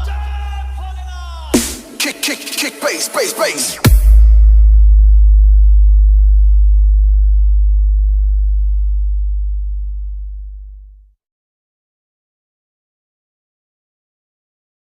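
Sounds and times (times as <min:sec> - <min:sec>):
deep electronic sub-bass tone: 0:00.0 - 0:01.8, 0:03.8 - 0:11.2.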